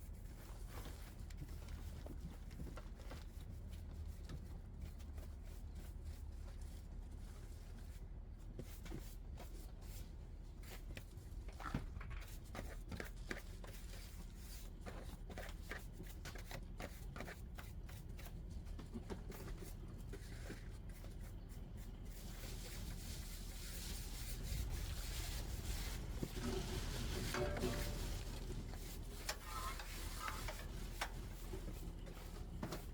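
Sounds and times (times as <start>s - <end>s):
rustling and scraping: 22.1s - 32.9s.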